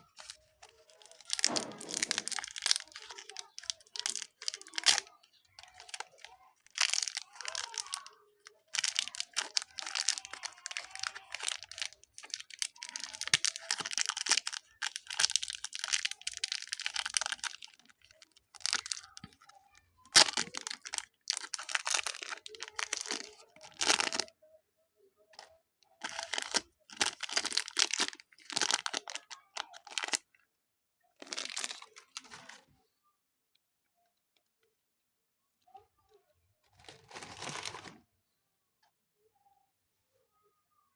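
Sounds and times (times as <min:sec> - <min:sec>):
hands kneading crackling slime: 0:00.0 - 0:19.4, 0:20.1 - 0:24.3, 0:26.0 - 0:30.2.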